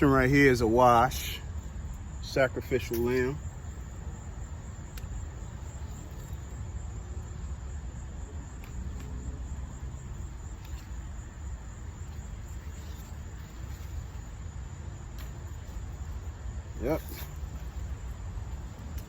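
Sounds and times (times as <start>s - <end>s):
high insect trill: 0.0s - 19.0s.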